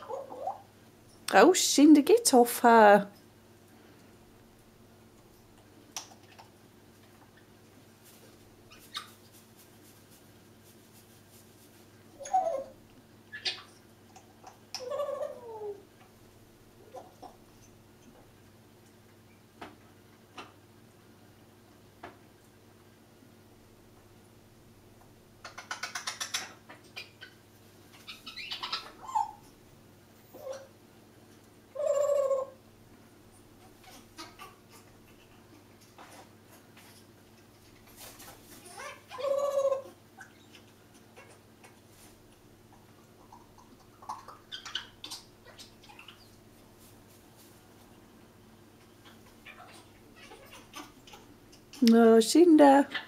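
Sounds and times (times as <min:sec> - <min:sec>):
parrot calls: 0:00.0 - 0:00.7, 0:12.2 - 0:15.8, 0:28.0 - 0:29.5, 0:30.3 - 0:30.8, 0:31.7 - 0:32.6, 0:38.6 - 0:41.8, 0:42.7 - 0:46.4, 0:48.8 - 0:51.8
faint steady hum: 0:00.0 - 0:53.0
parrot scratchy sounds: 0:07.3 - 0:12.7, 0:25.4 - 0:29.4, 0:33.6 - 0:42.2.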